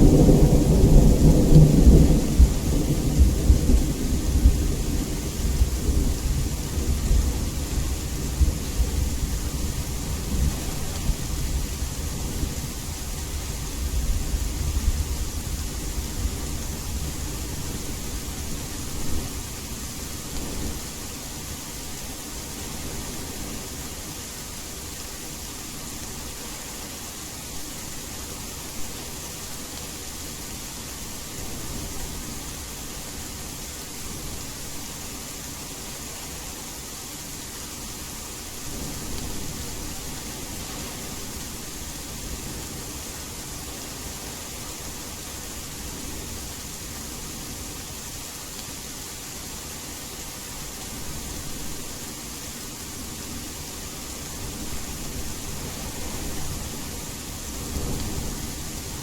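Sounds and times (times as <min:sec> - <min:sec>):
distant thunder rumbles: 0:00.0 - 0:12.6
steady rain hiss: 0:00.0 - 0:59.0
white noise: 0:00.0 - 0:59.0.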